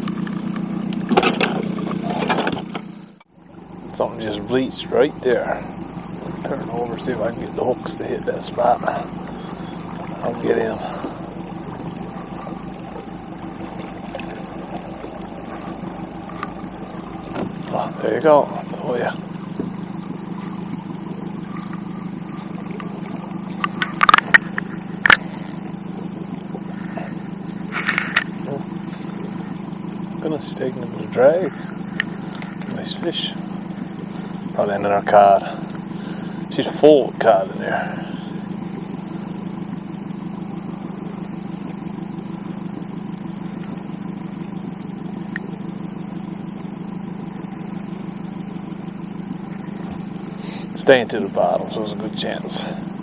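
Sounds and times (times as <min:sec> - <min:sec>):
boat engine humming: 0:00.0 - 0:53.0
outboard motor idling: 0:00.0 - 0:53.0
brief high-pitched buzz: 0:23.5 - 0:25.7.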